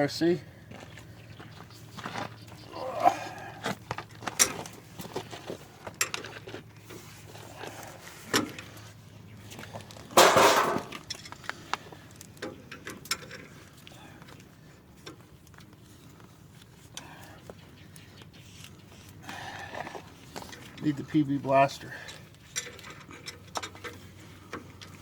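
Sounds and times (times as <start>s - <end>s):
metal clattering scrape: 10.1s - 11.0s
hand tools clinking on metal: 10.1s - 11.4s.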